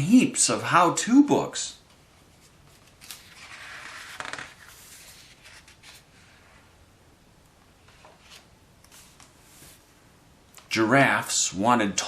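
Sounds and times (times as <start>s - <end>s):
paper page turning: 2.4s - 6.1s.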